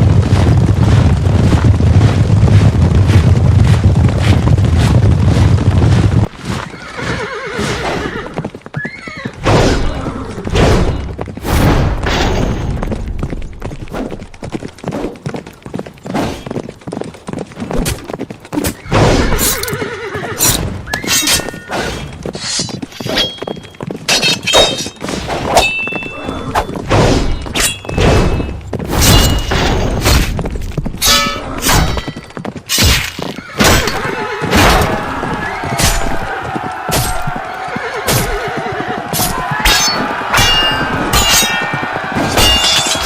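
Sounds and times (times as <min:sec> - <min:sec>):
hooves clattering: 0:00.0 - 0:43.0
horses whinnying: 0:06.4 - 0:10.6, 0:18.5 - 0:22.6, 0:33.2 - 0:43.0
sharp clashes and thuds: 0:09.4 - 0:14.1, 0:26.6 - 0:35.0, 0:35.8 - 0:36.3.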